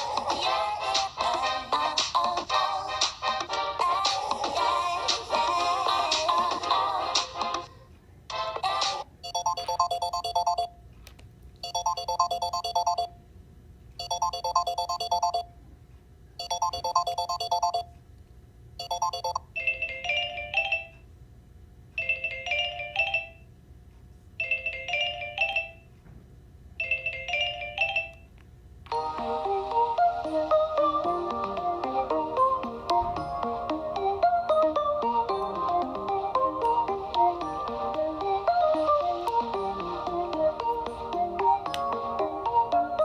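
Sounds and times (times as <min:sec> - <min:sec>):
phone ringtone melodies: 0:09.2 - 0:10.8, 0:11.6 - 0:13.2, 0:14.0 - 0:15.5, 0:16.4 - 0:17.9, 0:18.8 - 0:21.0, 0:22.0 - 0:23.5, 0:24.4 - 0:25.9, 0:26.8 - 0:28.3.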